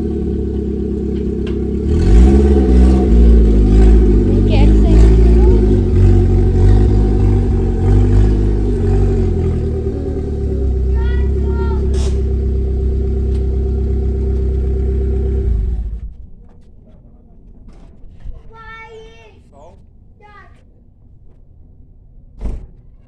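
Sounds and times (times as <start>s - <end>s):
car engine running: 0.0s - 16.6s.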